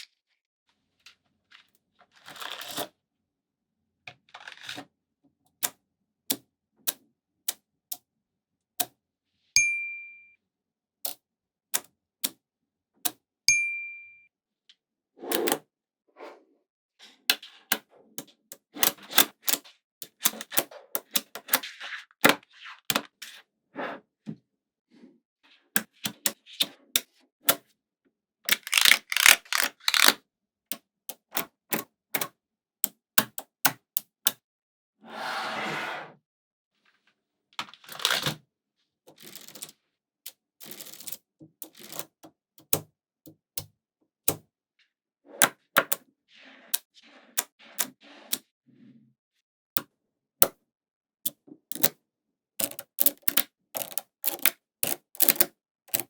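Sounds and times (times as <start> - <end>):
rattling clicks: 28.5 - 30.1
magnetic balls clicking together: 28.5 - 30.2, 51.7 - 51.9, 52.6 - 56.0.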